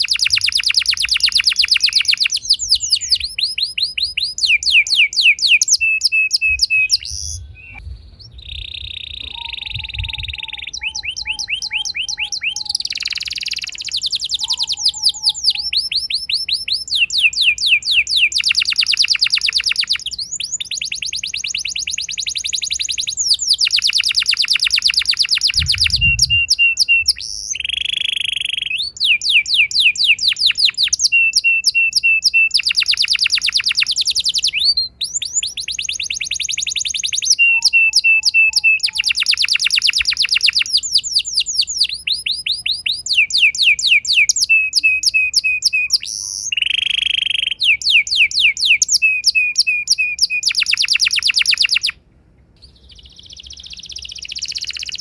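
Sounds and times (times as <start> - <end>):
canaries singing trills: 0.0 - 52.0, 52.6 - 55.0.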